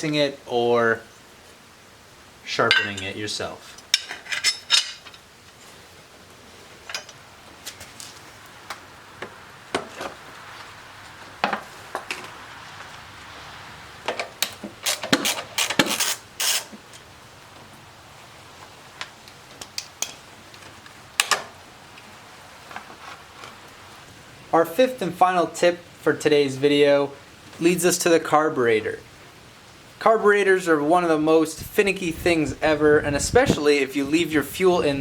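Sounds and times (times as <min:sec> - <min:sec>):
hand tools clanking on metal: 0:02.6 - 0:05.3.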